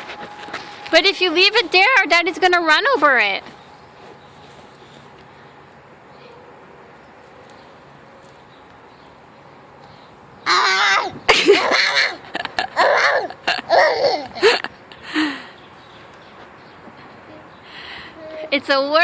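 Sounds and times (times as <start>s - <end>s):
young child laughing: 10.5s - 14.8s.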